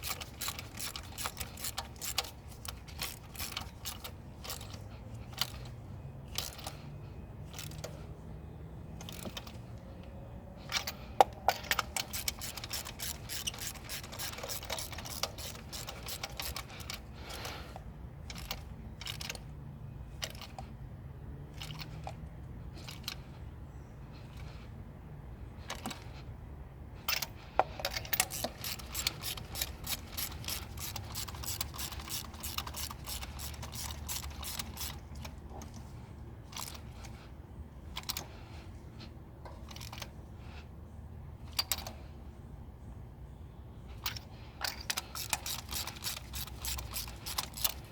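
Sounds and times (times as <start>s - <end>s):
rapid mechanical clicking: 0.0s - 5.7s, 10.7s - 19.5s, 27.8s - 35.9s, 44.0s - 47.9s.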